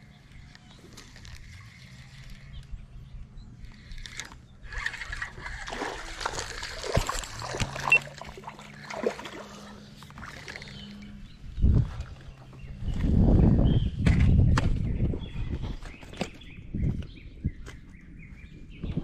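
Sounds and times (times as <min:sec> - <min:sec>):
water splashing and sloshing: 0:03.7 - 0:11.2.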